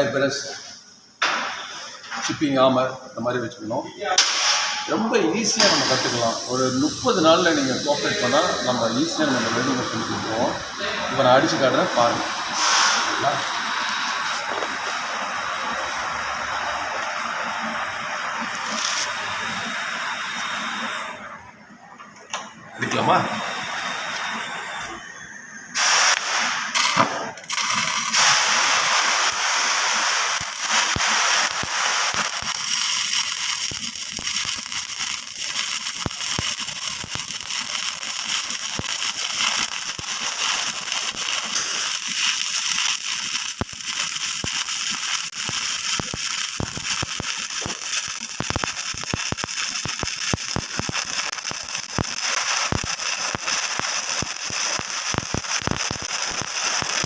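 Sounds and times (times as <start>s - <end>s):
welding arc crackling: 4.0s - 21.4s, 22.3s - 25.1s, 25.7s - 57.0s.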